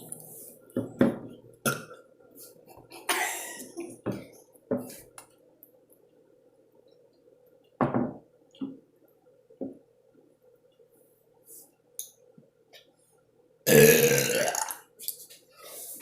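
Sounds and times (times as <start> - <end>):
person burping: 1.6 - 1.9, 13.7 - 14.8.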